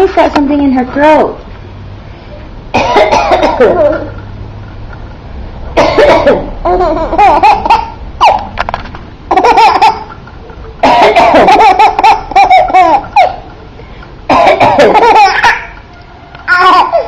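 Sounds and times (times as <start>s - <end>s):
baby laughing: 6.6s - 8.5s, 9.3s - 13.5s, 14.4s - 15.8s, 16.5s - 17.0s.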